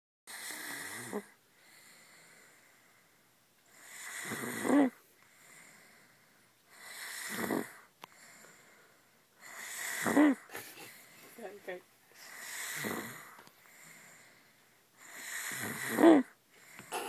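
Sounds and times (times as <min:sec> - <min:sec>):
person snoring: 0:00.3 - 0:02.3, 0:03.7 - 0:06.0, 0:06.8 - 0:08.6, 0:09.4 - 0:11.0, 0:12.2 - 0:14.3, 0:15.0 - 0:17.0
soft breathing: 0:01.5 - 0:03.8, 0:05.2 - 0:10.0, 0:10.6 - 0:15.5, 0:16.5 - 0:17.0.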